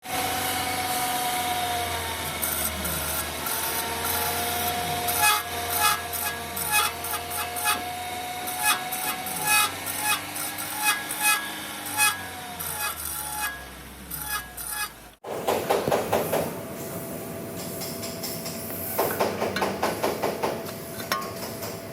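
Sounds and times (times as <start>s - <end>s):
disc brakes squealing: 10.9s - 15.1s
brake rubbing and scraping: 12.0s - 15.2s.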